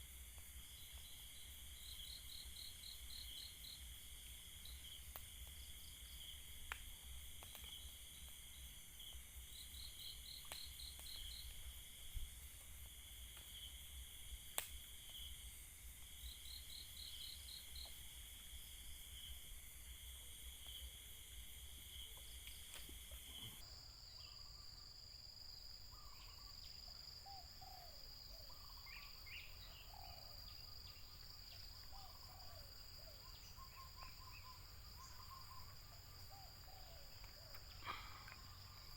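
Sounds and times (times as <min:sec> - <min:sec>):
crickets and night insects trilling: 0:00.0 - 0:38.9
faint ticks: 0:06.6 - 0:08.4, 0:14.6 - 0:15.3, 0:37.1 - 0:38.9.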